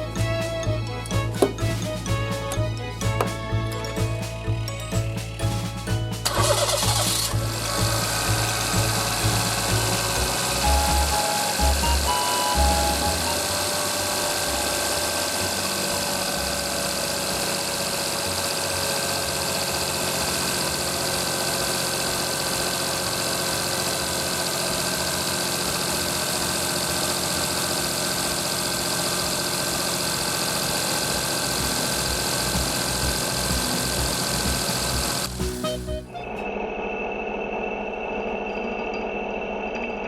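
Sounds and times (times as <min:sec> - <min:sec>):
small car engine idling: 0:06.0 - 0:35.6.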